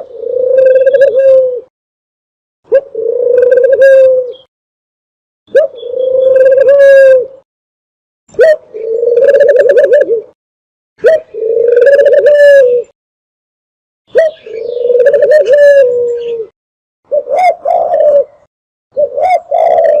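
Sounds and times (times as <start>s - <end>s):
dove purring coos: 0.0s - 1.7s, 2.7s - 4.5s, 5.5s - 7.5s, 8.4s - 10.4s, 11.0s - 13.0s, 14.1s - 20.0s.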